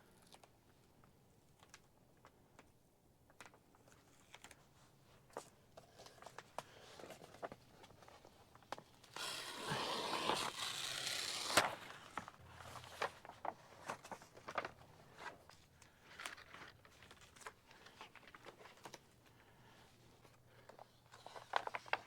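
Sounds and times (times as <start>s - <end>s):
plastic sheet rustling and crackling: 9.2s - 15.4s.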